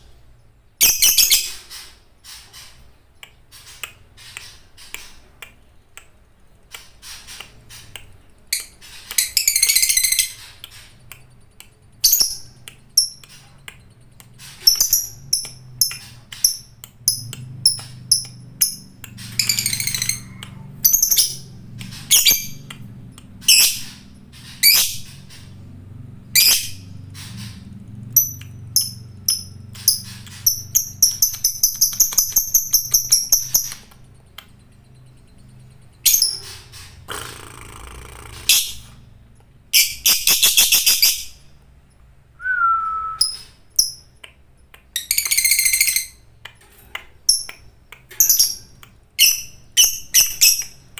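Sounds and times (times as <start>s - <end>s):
lovebird chirping and trilling: 0.8s - 2.8s, 7.0s - 11.1s, 11.8s - 25.6s, 26.2s - 39.0s, 39.7s - 41.5s, 43.2s - 44.2s, 45.0s - 46.3s, 48.1s - 50.9s.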